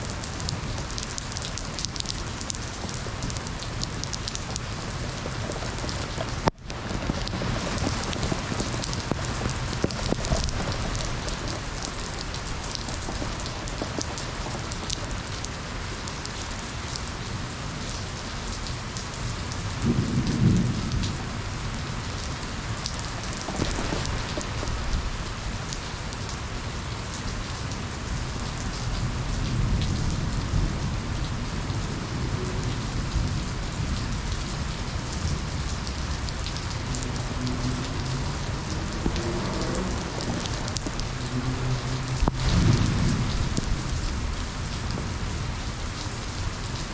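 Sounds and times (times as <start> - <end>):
steady rain falling: 0.0 - 46.9
low rumble of thunder: 19.6 - 25.4, 28.4 - 46.6.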